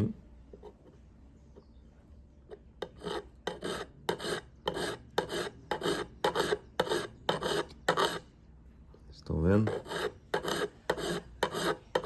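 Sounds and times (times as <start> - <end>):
hand file rasping on steel: 2.8 - 8.2, 9.6 - 12.0.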